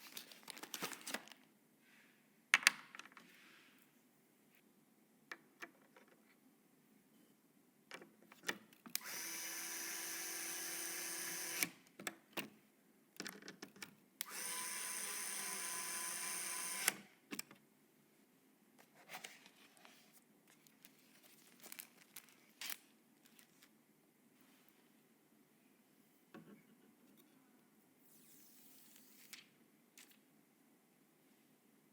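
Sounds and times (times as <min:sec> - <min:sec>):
electric screwdriver whining: 0:09.0 - 0:11.7, 0:14.2 - 0:17.0.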